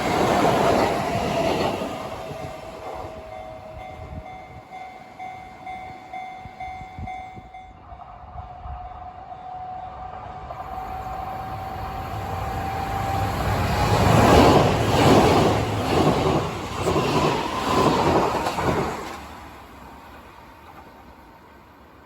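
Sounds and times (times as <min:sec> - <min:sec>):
train wheels clattering over track: 0:12.7 - 0:19.4.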